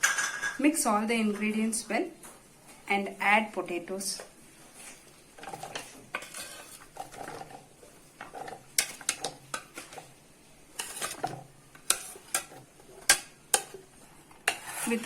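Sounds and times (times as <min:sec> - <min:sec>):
spoon clinking and scraping in bowl: 0:05.4 - 0:07.6, 0:08.2 - 0:10.0, 0:10.8 - 0:13.8.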